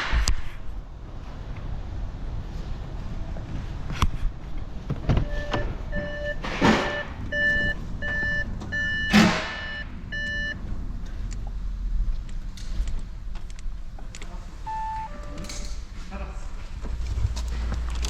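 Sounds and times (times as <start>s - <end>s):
low vehicle rumble: 0.4s - 18.0s
reversing alarm beeping: 5.2s - 10.6s, 14.6s - 15.6s.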